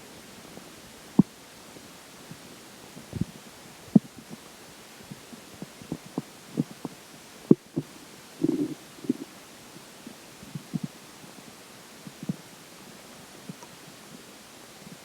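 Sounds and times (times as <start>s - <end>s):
stomach gurgling: 7.5s - 9.3s.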